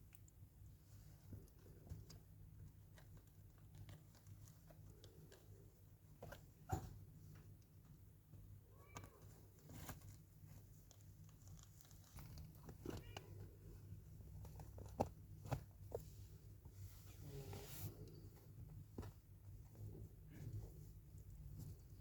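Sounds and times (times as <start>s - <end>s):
low steady hum: 0.0s - 22.0s
cat meowing faintly: 8.7s - 9.3s.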